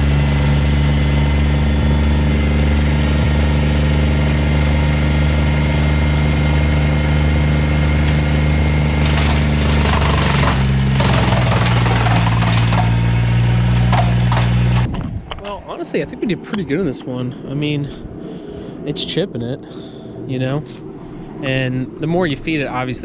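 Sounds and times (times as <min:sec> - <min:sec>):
chipper grinding wood: 0:00.0 - 0:14.9
wood chipper engine running: 0:00.0 - 0:15.1.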